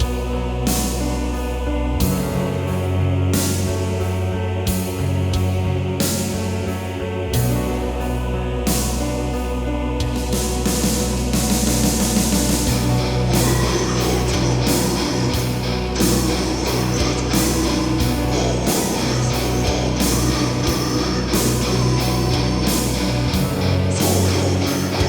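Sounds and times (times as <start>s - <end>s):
bass: 0.0s - 25.0s
drums: 0.0s - 25.0s
distorted electric guitars: 12.3s - 25.0s.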